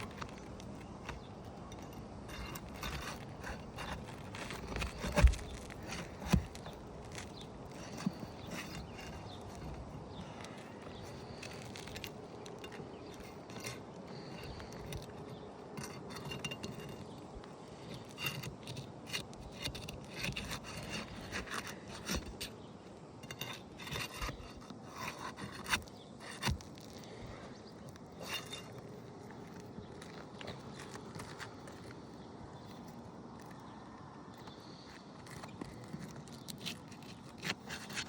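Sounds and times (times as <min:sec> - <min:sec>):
scraping on roof shingles: 0:00.0 - 0:22.5.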